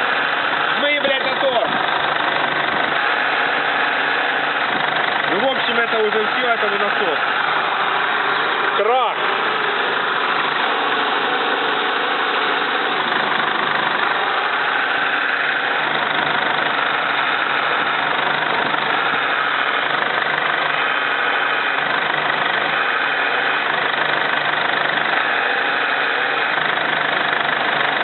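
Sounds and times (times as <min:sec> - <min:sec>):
engine running: 0:00.0 - 0:28.0
power steering pump humming: 0:00.0 - 0:28.0.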